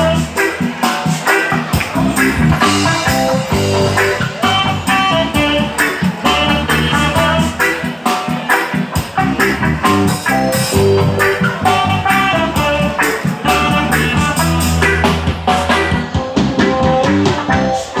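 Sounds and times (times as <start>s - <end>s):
bass guitar: 0.0s - 18.0s
drum kit beat: 0.0s - 18.0s
guitar: 0.0s - 18.0s.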